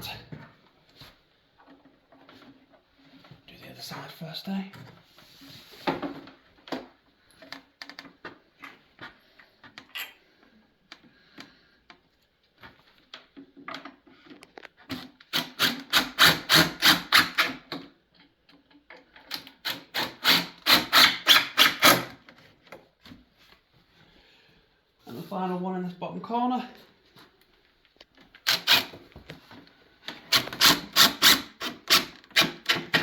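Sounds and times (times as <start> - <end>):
screws driven into wood: 15.3 - 17.6, 19.6 - 22.2, 28.4 - 29.0, 30.3 - 33.0.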